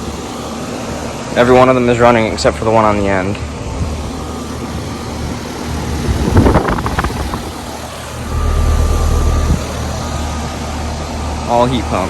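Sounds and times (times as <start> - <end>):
heat pump fan and compressor hum: 0.0 - 12.0
low rumble: 8.2 - 10.0.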